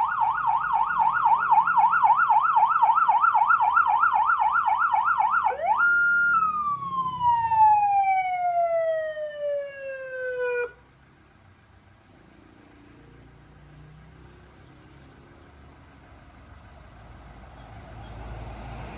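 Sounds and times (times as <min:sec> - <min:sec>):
electronic vehicle siren: 0:00.0 - 0:10.8.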